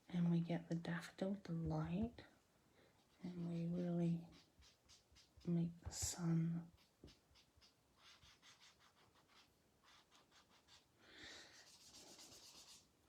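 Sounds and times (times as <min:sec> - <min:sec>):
soft rubbing: 0:02.9 - 0:10.9
ink dauber dabbing on cardstock: 0:03.0 - 0:10.6.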